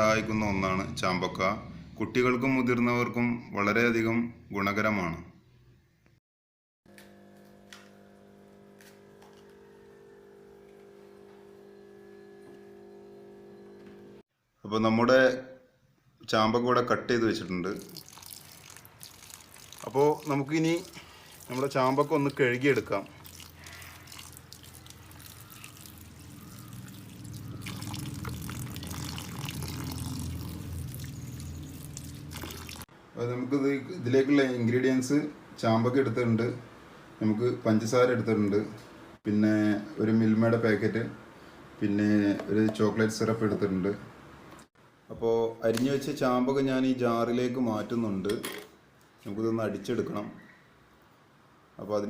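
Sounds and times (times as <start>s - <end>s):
fruit rinsed under running tap: 17.7s - 32.9s
water splashing and trickling: 17.7s - 32.9s.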